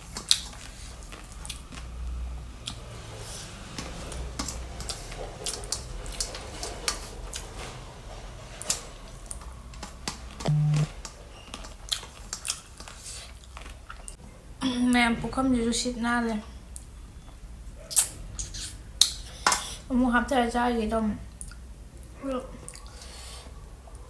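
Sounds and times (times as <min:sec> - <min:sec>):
wet chewing and squishing: 0:00.0 - 0:01.9.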